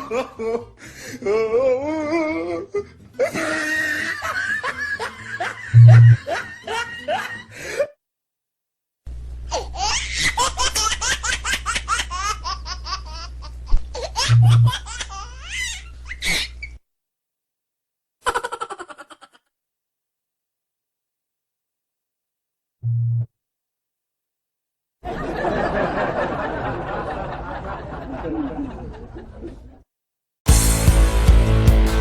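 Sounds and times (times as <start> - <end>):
hearty laughter: 0.0 - 7.9, 25.0 - 29.8
high-pitched rapid laughter: 3.2 - 7.4, 14.0 - 16.5.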